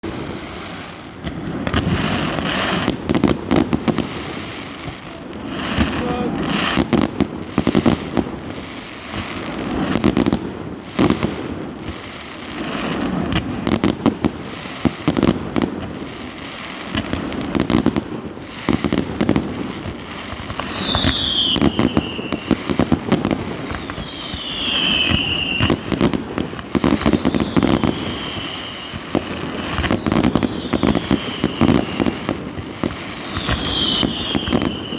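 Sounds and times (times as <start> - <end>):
fireworks and firecrackers banging: 0.0 - 34.9
whistling fireworks: 0.0 - 34.9
crowd murmuring: 4.9 - 6.8.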